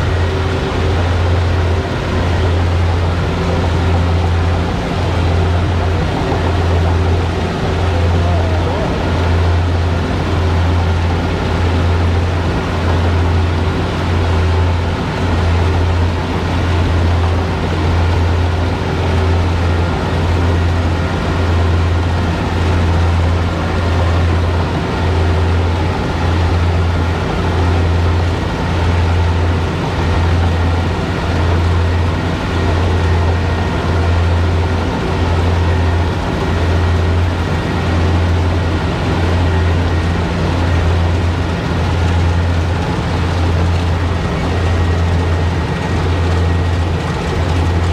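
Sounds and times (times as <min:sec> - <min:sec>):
diesel engine droning: 0:00.0 - 0:47.9.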